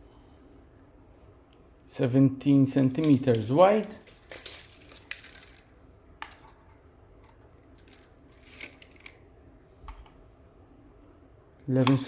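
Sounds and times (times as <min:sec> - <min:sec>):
packaging rustle: 0:03.3 - 0:05.8.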